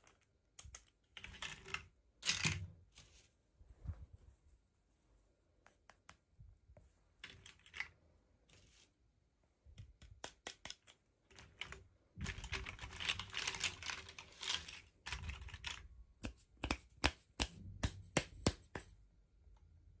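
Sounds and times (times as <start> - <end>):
plastic pieces clicking: 0.0 - 2.6, 10.0 - 17.5.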